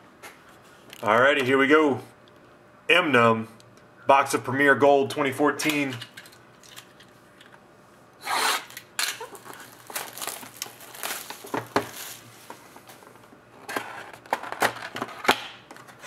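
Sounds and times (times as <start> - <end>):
packaging tearing: 8.2 - 12.3
packaging rustling: 8.6 - 16.0.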